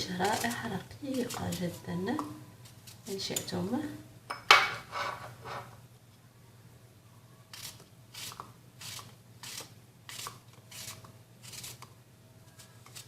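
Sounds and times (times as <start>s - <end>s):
knife slicing apple: 7.5s - 11.9s.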